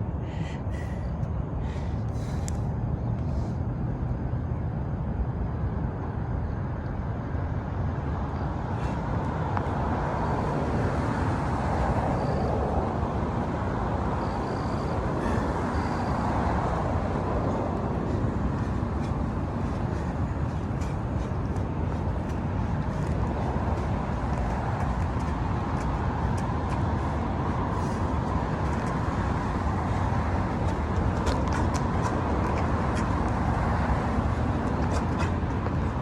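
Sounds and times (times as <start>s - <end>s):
low traffic rumble: 0.0s - 36.0s
vehicle passing: 14.9s - 36.0s.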